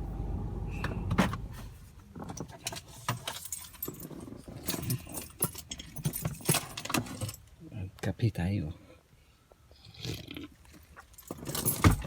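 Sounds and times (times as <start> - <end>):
car engine rumble: 0.0 - 2.5
keys jangling and clicking: 2.7 - 7.5, 11.1 - 12.0.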